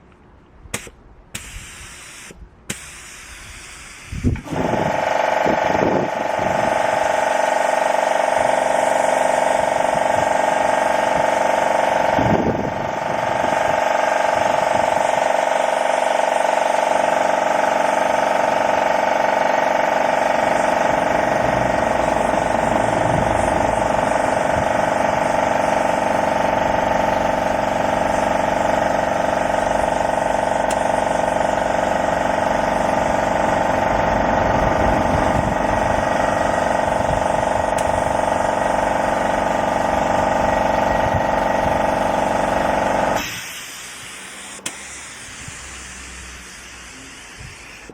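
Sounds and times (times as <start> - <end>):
air compressor running: 0.7 - 47.9
spray gun hissing: 0.8 - 4.3, 6.7 - 11.0, 19.6 - 40.5, 41.2 - 47.9.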